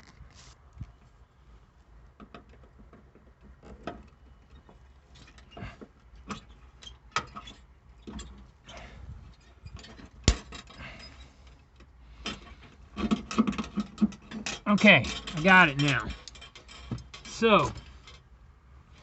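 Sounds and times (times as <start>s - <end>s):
hand tools clicking and scraping: 9.8s - 18.3s.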